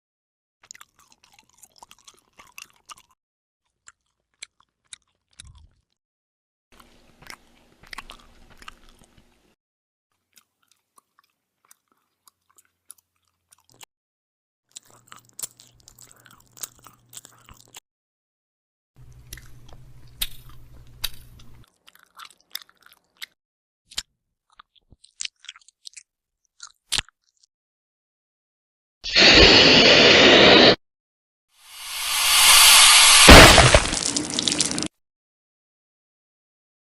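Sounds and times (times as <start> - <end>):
bubblegum chewing with wet smacking: 0.6 - 6.0, 6.8 - 9.5, 10.2 - 13.9, 14.7 - 17.8, 19.1 - 27.5.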